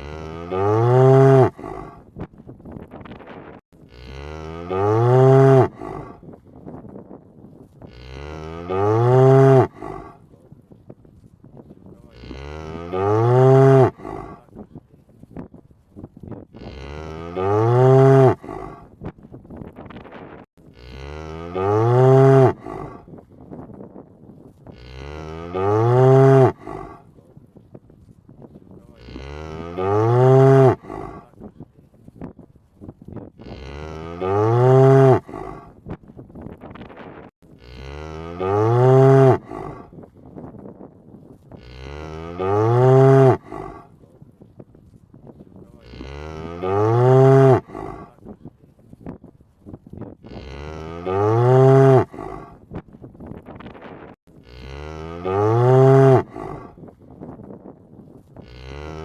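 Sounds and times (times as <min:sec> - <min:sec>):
cow mooing: 0:00.0 - 0:02.0, 0:03.8 - 0:06.2, 0:07.9 - 0:10.2, 0:12.0 - 0:14.5, 0:16.6 - 0:18.9, 0:20.7 - 0:23.1, 0:24.7 - 0:27.0, 0:28.9 - 0:31.3, 0:33.4 - 0:35.7, 0:37.6 - 0:39.9, 0:41.5 - 0:43.9, 0:45.8 - 0:48.2, 0:50.2 - 0:52.6, 0:54.4 - 0:56.8, 0:58.4 - 0:59.0.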